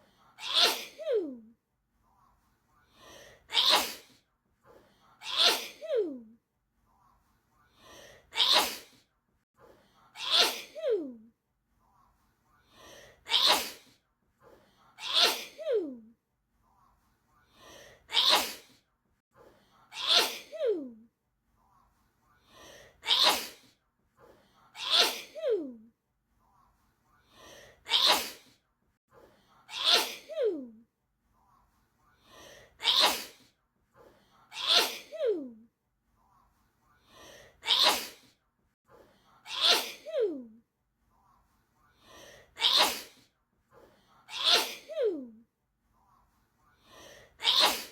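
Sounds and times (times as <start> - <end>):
person sneezing: 0.4 - 1.4, 3.5 - 4.2, 5.2 - 6.2, 8.4 - 9.0, 10.2 - 11.1, 13.3 - 14.0, 15.0 - 15.9, 18.1 - 18.8, 20.0 - 20.8, 23.0 - 23.7, 24.8 - 25.8, 27.9 - 28.6, 29.7 - 30.6, 32.8 - 33.5, 34.6 - 35.4, 37.6 - 38.3, 39.5 - 40.4, 42.6 - 43.3, 44.3 - 45.3, 47.4 - 47.9
faint in-breath: 2.0 - 3.5, 6.8 - 8.3, 11.8 - 13.2, 13.8 - 15.0, 16.7 - 18.1, 21.6 - 23.0, 23.6 - 24.7, 26.4 - 27.8, 31.3 - 32.8, 36.2 - 37.6, 38.2 - 39.4, 41.2 - 42.6, 43.2 - 44.3, 46.0 - 47.4.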